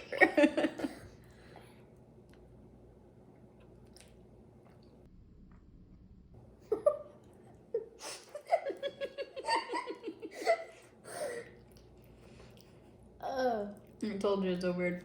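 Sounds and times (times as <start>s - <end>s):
woman laughing: 0.0s - 1.0s, 6.7s - 11.5s.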